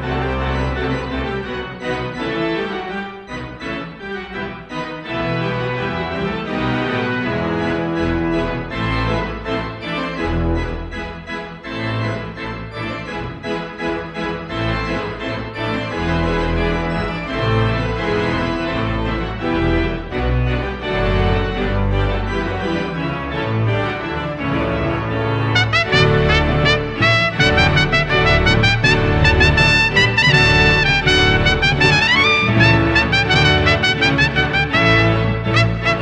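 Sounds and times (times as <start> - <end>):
brass ensemble playing chords: 5.0 - 36.0
bright trumpet line: 25.6 - 36.0
moving bass line: 25.6 - 36.0.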